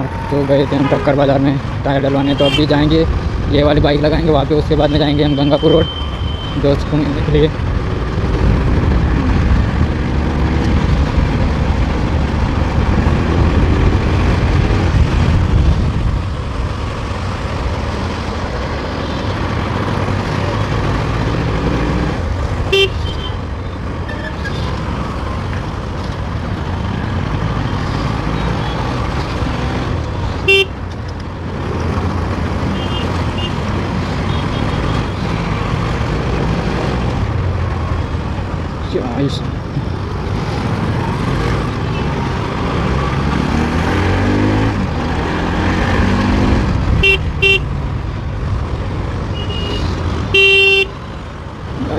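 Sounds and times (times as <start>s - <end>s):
vehicle horn toots: 2.2s - 2.8s, 22.7s - 23.4s, 30.4s - 30.8s, 32.7s - 33.6s, 47.0s - 47.7s, 49.3s - 51.0s
wind rumble: 7.7s - 18.6s.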